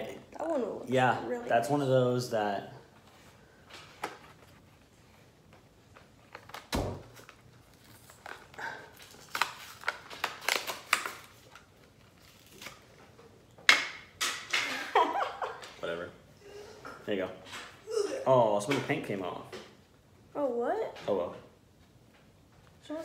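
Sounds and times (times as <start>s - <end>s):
plastic packaging clicks and crackles: 5.9s - 13.0s.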